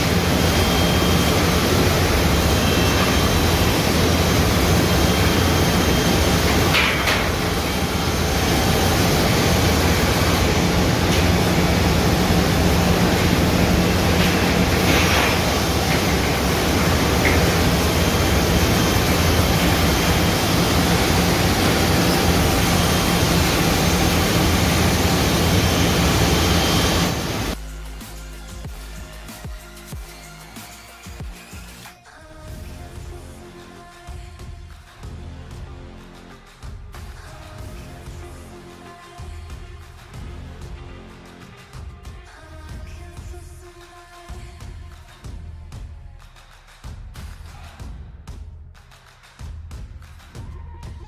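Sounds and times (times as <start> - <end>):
jigsaw machine running: 0.0 - 27.6.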